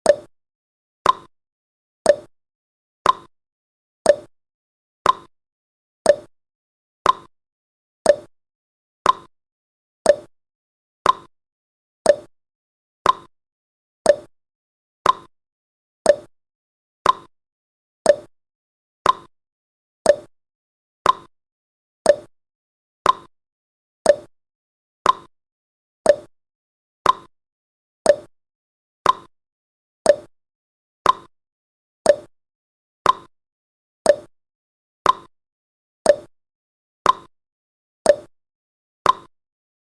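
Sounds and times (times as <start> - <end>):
clock-like tick-tock: 0.0 - 0.4, 1.0 - 1.3, 2.0 - 2.4, 3.0 - 3.3, 4.0 - 4.4, 5.0 - 5.3, 6.0 - 6.4, 7.0 - 7.3, 8.0 - 8.4, 9.0 - 9.3, 10.0 - 10.4, 11.0 - 11.3, 12.0 - 12.4, 13.0 - 13.4, 14.0 - 14.4, 15.0 - 15.4, 16.0 - 16.4, 17.0 - 17.3, 18.0 - 18.4, 19.0 - 19.3, 20.0 - 20.4, 21.0 - 21.4, 22.0 - 22.4, 23.0 - 23.4, 24.0 - 24.4, 25.0 - 25.4, 26.0 - 26.4, 27.0 - 27.4, 28.0 - 28.4, 29.0 - 29.4, 30.0 - 30.4, 31.0 - 31.4, 32.0 - 32.4, 33.0 - 33.4, 34.0 - 34.4, 35.0 - 35.4, 36.0 - 36.4, 37.0 - 37.4, 38.0 - 38.4, 39.0 - 39.4.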